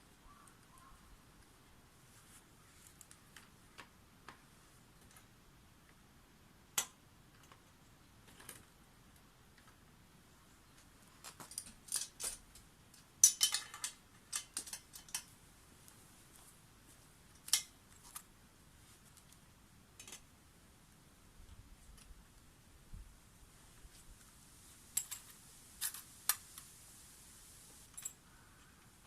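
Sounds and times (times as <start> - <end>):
small metal objects clinking: 11.4 - 12.4, 13.2 - 15.3.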